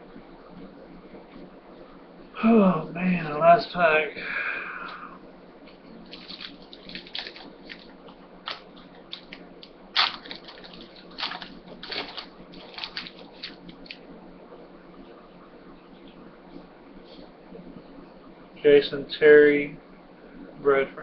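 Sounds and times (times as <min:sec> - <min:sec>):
plastic wrapper crinkling: 0:06.0 - 0:14.0
cards being handled: 0:06.1 - 0:07.9, 0:08.5 - 0:14.0.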